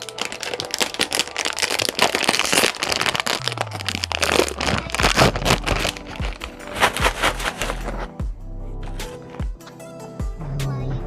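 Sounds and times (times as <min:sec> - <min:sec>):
plastic chip bag crinkling: 0:00.0 - 0:08.1.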